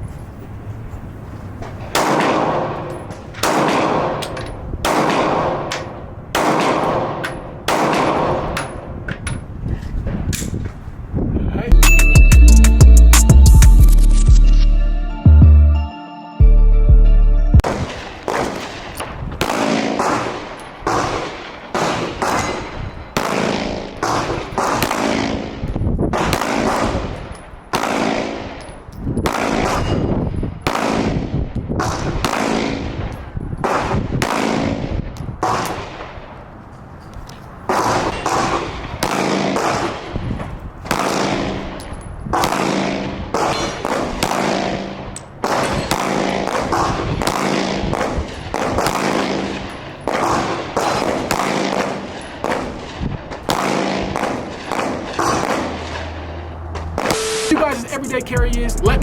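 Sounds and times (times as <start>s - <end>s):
gunshots with ringing tail: 1.9s - 8.9s, 17.6s - 28.6s, 29.2s - 36.2s, 37.7s - 40.2s, 40.9s - 56.3s.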